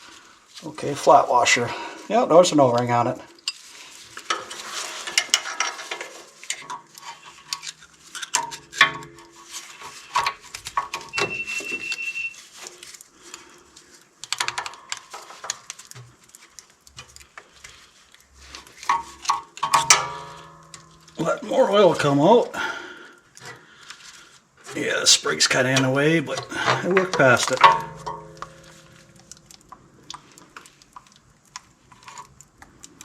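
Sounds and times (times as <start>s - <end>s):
short high squeak: 11.1s - 12.4s.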